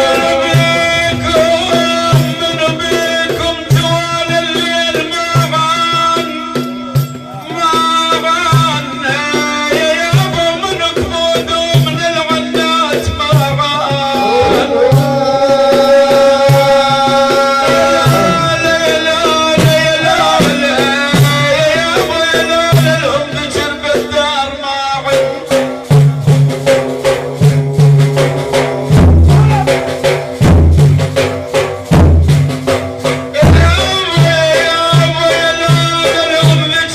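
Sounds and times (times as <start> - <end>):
person chanting long lines: 0.0 - 5.4, 13.3 - 25.6
heavy drum strokes: 0.0 - 36.9
rattling percussion: 0.0 - 36.9
rhythmic drumming: 0.0 - 36.9.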